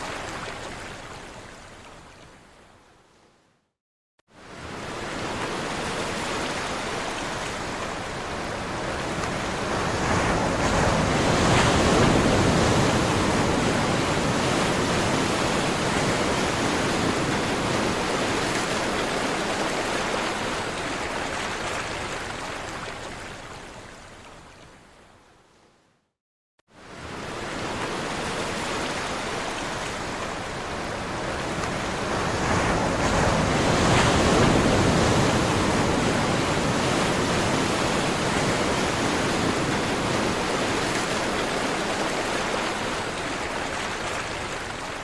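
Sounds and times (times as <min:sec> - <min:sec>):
waves breaking: 0:04.4 - 0:23.5, 0:26.8 - 0:45.0.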